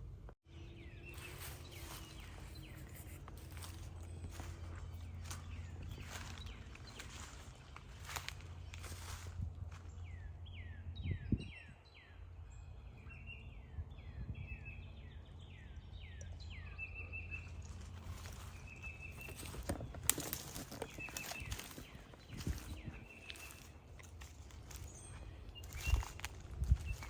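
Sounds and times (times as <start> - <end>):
songbird singing: 0.0 - 27.0
steady low rumble: 0.0 - 27.0
sharp clicks and rustles: 17.8 - 22.7.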